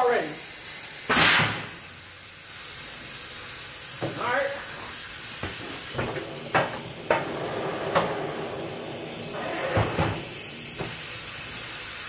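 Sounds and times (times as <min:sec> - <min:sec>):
tools knocking and clattering: 0:05.4 - 0:08.2.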